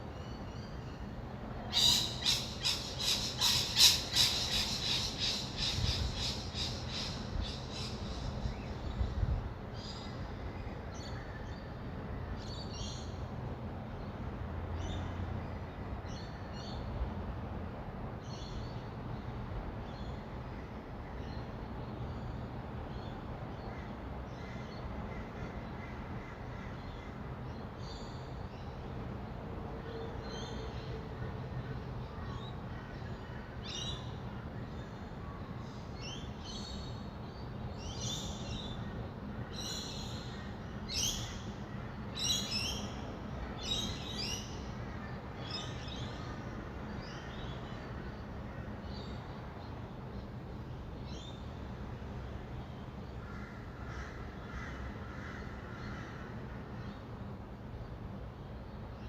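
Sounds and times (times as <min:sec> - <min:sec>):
distant city traffic rumble: 0:00.0 - 0:59.0
lorikeets screeching: 0:01.7 - 0:08.5.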